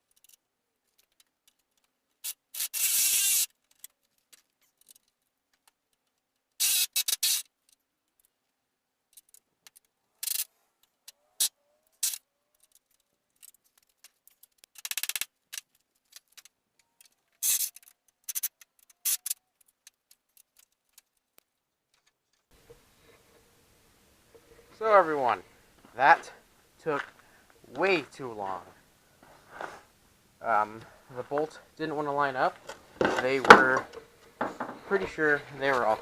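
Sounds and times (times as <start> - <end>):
metallic clicks and rattles: 0.0 - 2.8, 9.1 - 11.2, 11.9 - 22.5
impact wrench bursts: 2.2 - 3.5, 6.6 - 7.5, 17.4 - 19.4.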